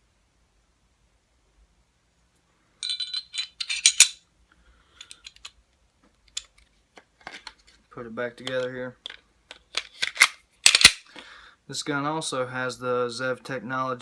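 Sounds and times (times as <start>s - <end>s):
metal pistol parts clinking: 2.8s - 4.2s, 8.4s - 11.2s.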